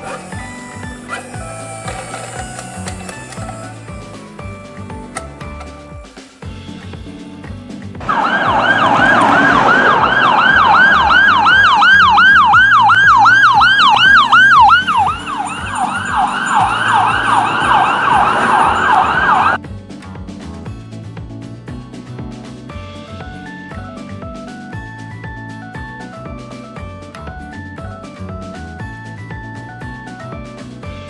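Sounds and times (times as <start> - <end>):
ambulance siren yelping: 8.0 - 19.6
second siren: 8.0 - 19.6.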